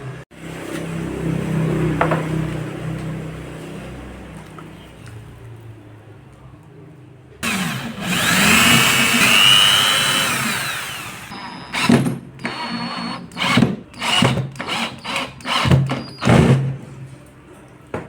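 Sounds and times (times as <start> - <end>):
short motor bursts: 7.4 - 11.9
power tool motor whining: 7.4 - 16.4.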